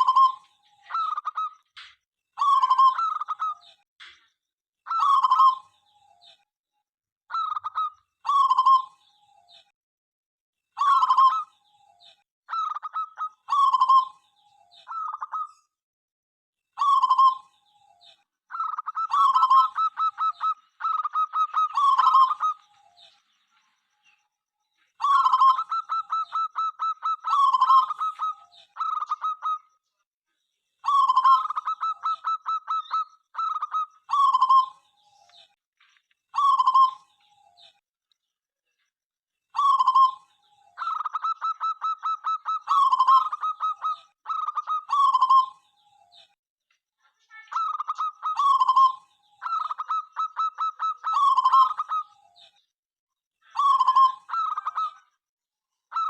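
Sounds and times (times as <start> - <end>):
dove cooing: 0.0 - 1.5, 7.3 - 9.0, 18.5 - 23.0, 25.0 - 29.7, 30.9 - 34.8, 36.4 - 37.1, 39.6 - 40.2, 40.8 - 45.6, 47.6 - 52.3, 53.6 - 55.0.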